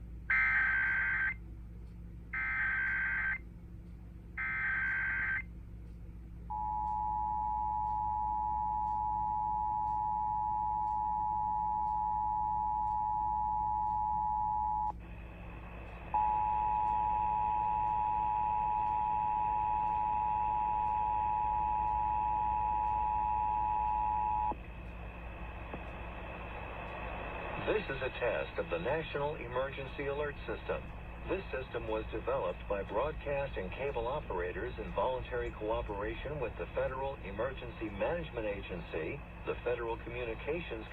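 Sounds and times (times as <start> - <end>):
steady two-tone attention signal: 0.3 - 1.4, 2.4 - 3.4, 4.4 - 5.4, 6.5 - 14.9, 16.1 - 24.5
warbling digital data bursts: 2.4 - 3.4.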